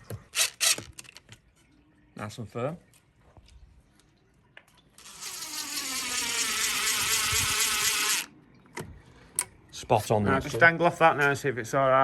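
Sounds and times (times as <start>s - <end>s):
power drill whining: 0.4s - 1.1s, 5.0s - 8.3s.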